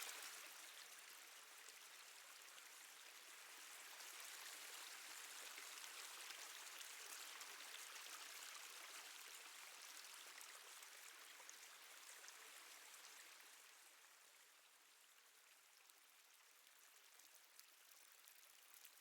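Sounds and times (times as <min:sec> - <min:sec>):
water dripping in a cave: 0:14.7 - 0:19.0.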